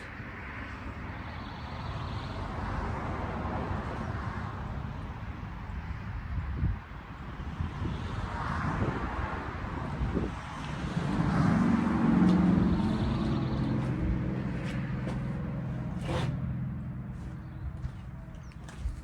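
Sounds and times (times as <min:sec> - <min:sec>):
vehicle driving past: 0:10.1 - 0:18.1.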